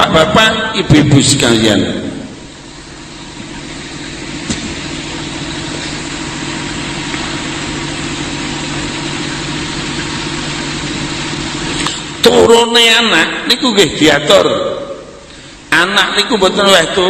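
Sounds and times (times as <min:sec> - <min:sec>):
low engine-like drone: 0:02.0 - 0:12.5.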